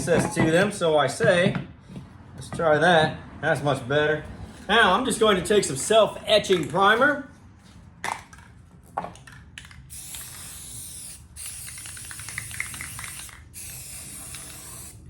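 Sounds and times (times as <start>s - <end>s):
aerosol can spraying: 9.9s - 15.0s.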